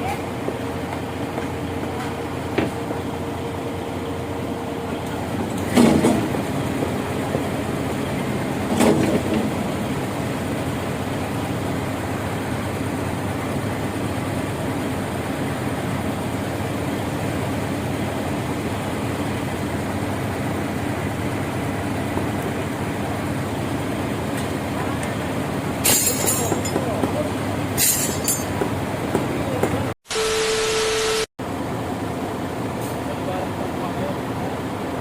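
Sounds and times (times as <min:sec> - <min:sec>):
diesel engines running: 0:00.0 - 0:30.0, 0:31.4 - 0:35.0
metal clank: 0:25.8 - 0:27.0, 0:27.8 - 0:28.7.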